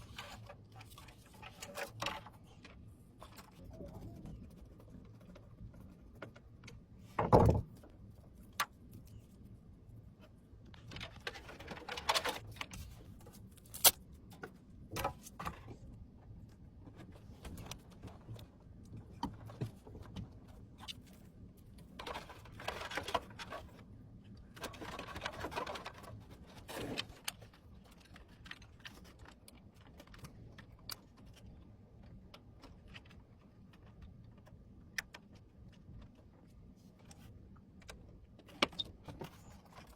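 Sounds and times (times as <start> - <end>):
computer hardware clicks and knocks: 5.3 - 7.9.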